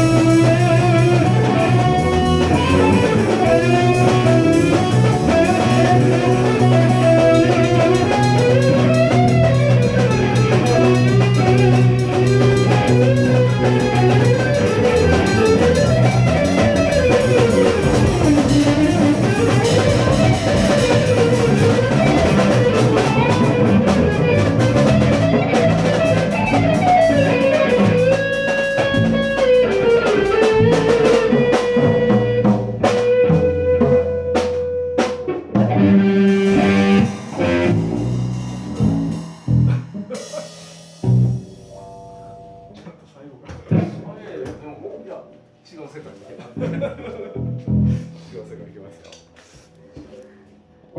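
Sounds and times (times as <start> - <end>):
electric guitar lead line: 0.0 - 42.8
drum kit: 0.0 - 44.7
bass guitar: 0.0 - 45.6, 46.4 - 50.9.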